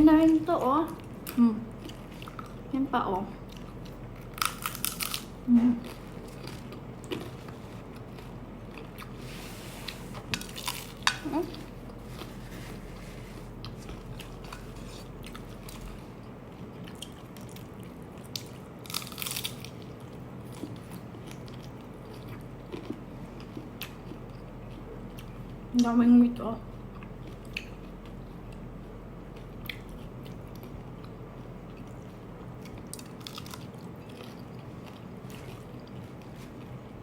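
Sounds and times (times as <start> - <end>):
low steady hum: 0.0 - 37.0
crunching taco shell bites: 4.2 - 5.4, 18.4 - 20.0.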